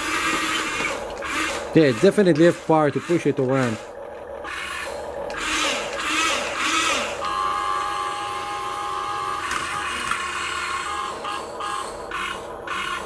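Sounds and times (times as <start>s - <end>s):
toy electric motors whining: 0.0s - 13.0s.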